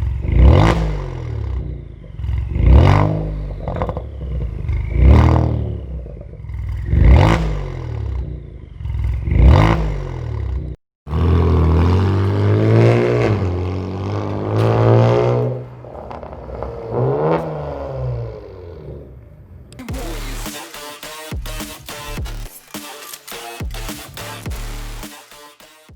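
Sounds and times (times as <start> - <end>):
car engine revving through exhaust: 0.0 - 20.5.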